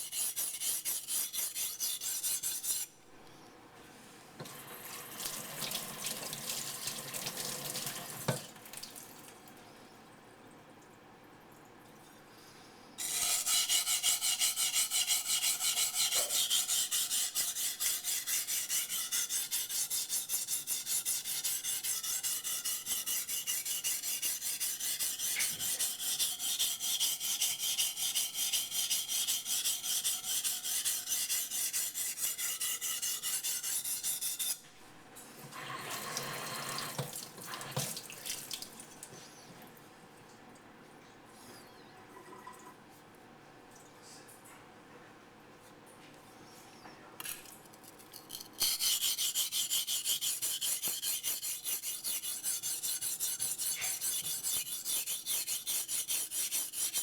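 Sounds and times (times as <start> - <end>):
knife rasping on whetstone: 0.0 - 2.9, 13.0 - 34.6, 48.6 - 57.0.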